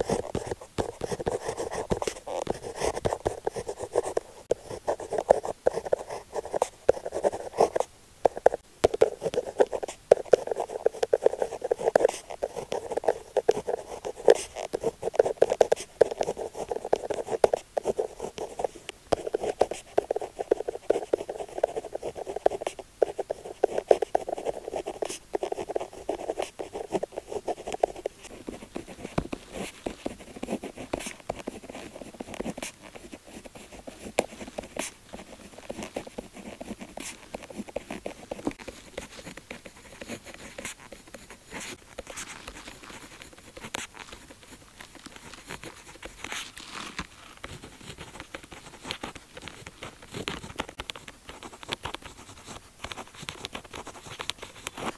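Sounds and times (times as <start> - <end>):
pen scratching on paper: 0.0 - 46.5, 47.4 - 54.9.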